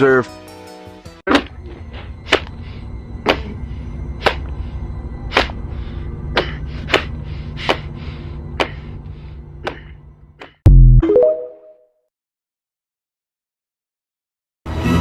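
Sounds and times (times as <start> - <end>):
steady low hum: 1.3 - 10.6
sharp whacks with hissing tail: 4.2 - 4.5, 5.3 - 5.6.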